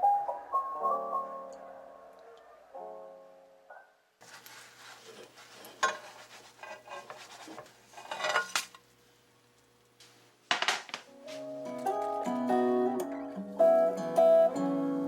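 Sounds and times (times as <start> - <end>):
dishes and cutlery clinking: 5.7 - 8.8, 10.5 - 11.1
guitar music: 11.1 - 15.0.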